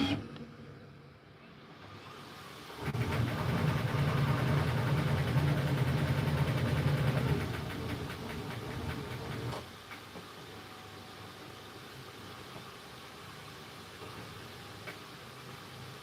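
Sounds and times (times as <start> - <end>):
three d printer motors humming: 0.0 - 2.0.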